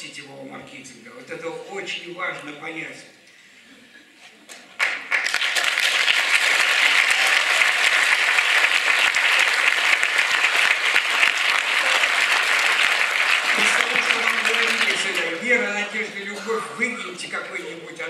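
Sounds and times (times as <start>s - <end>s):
audience applauding: 4.7s - 16.3s.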